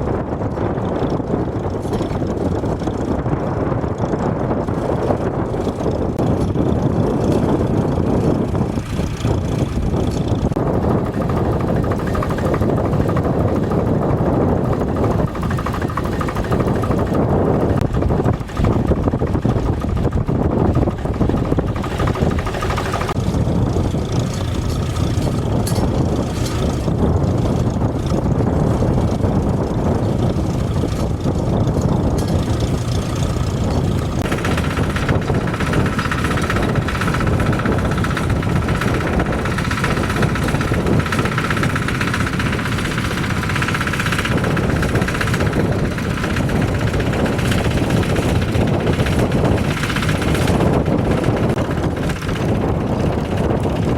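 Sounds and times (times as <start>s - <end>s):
tractor engine running: 0.0s - 53.9s
high steady whine: 29.5s - 53.9s.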